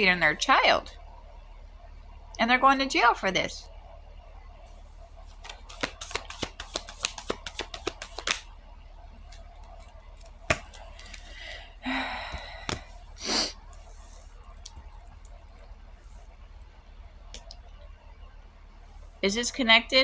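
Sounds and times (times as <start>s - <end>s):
card rustles: 5.2s - 8.5s, 9.2s - 11.6s
cards being shuffled: 5.2s - 8.5s, 9.2s - 11.6s
card taps: 5.3s - 8.5s, 9.3s - 11.5s, 12.3s - 13.0s.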